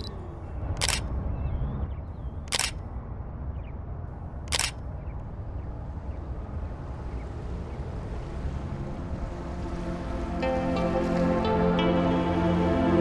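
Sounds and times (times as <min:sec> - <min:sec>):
sharp clicks: 0:00.8 - 0:01.1, 0:02.5 - 0:02.8, 0:04.5 - 0:04.8.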